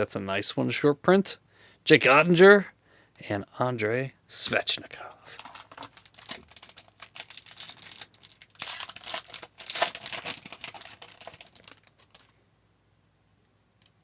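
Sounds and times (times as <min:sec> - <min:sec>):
foil wrapper crinkling and tearing: 0:05.3 - 0:12.3.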